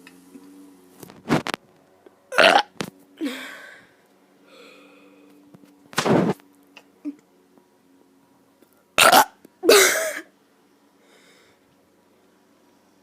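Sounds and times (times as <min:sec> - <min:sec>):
faint steady hum: 0:00.0 - 0:13.0
child burping: 0:02.3 - 0:03.4, 0:09.0 - 0:10.3
breathy sound: 0:03.2 - 0:05.4.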